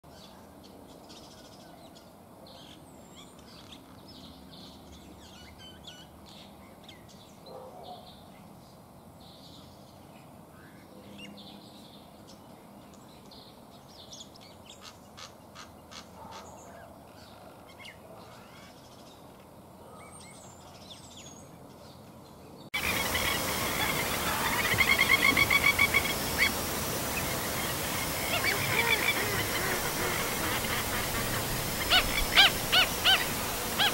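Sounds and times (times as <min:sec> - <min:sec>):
wild birds calling: 0:22.8 - 0:33.9.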